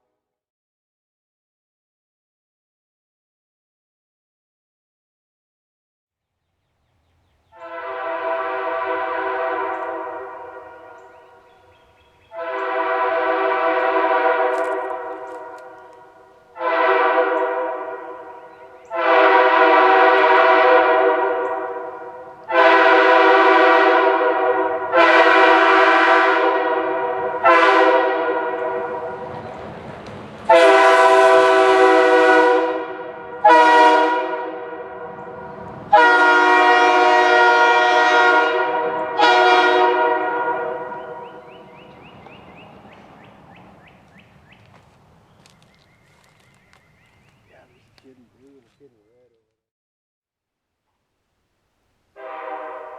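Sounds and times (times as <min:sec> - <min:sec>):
train air horn blasts: 0:07.5 - 0:29.6, 0:30.5 - 0:42.2, 0:52.1 - 0:52.9.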